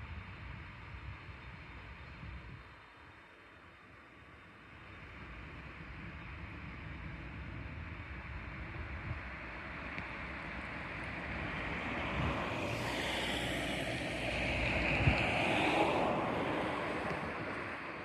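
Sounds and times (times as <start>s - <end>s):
vehicle passing with rushing noise: 9.2s - 18.0s.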